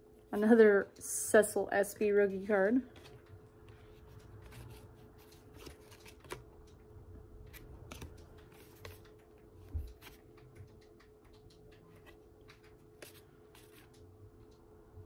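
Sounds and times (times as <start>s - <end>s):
cards clicking and sliding: 2.9s - 6.8s, 7.5s - 14.1s.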